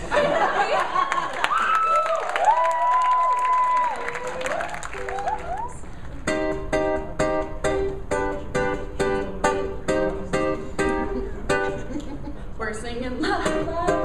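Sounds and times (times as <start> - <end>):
acoustic guitar strumming: 6.2 - 11.9.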